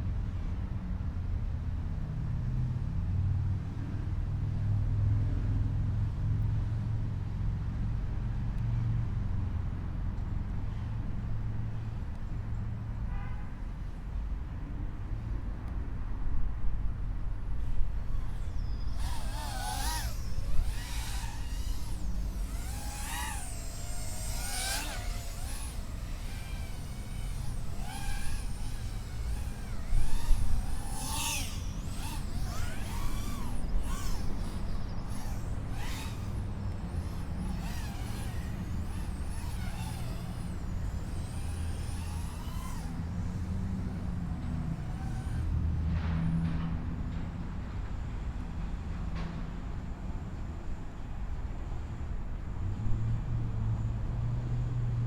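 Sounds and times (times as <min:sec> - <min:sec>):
drone motors whining: 0:17.5 - 0:45.6.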